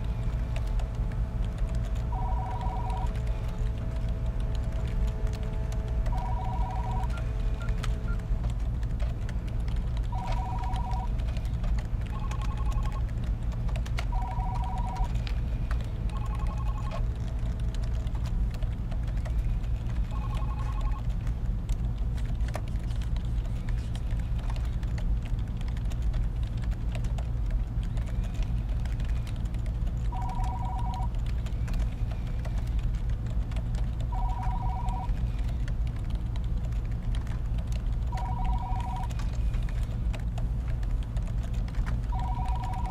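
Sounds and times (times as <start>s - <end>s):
low room hum: 0.0s - 42.9s
keyboard typing clicks: 0.5s - 42.9s.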